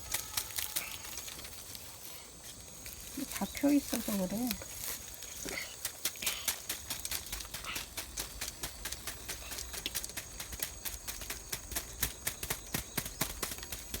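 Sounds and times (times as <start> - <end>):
dried gourds crackling when squeezed: 0.0 - 14.0.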